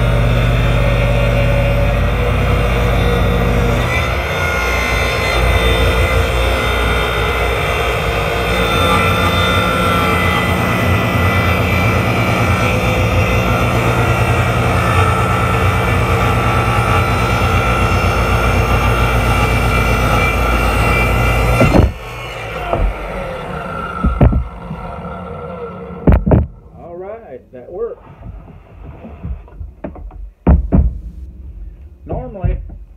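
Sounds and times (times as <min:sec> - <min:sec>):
table saw motor whining: 0:00.0 - 0:26.7
sharp knock: 0:21.6 - 0:22.0, 0:28.2 - 0:31.4.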